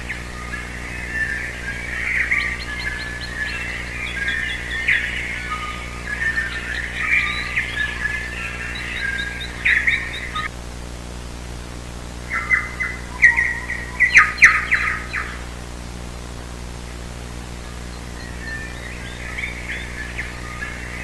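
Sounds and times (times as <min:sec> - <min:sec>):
birds chirping and singing: 0:00.0 - 0:10.5, 0:12.3 - 0:15.5, 0:16.9 - 0:21.0
steady low hum: 0:00.0 - 0:21.0.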